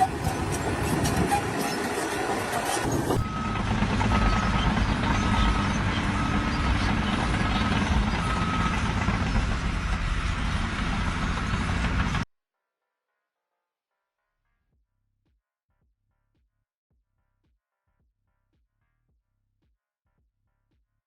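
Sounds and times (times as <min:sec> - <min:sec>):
reversing alarm beeping: 0:00.0 - 0:12.2
heavy vehicle engine running: 0:00.0 - 0:12.3.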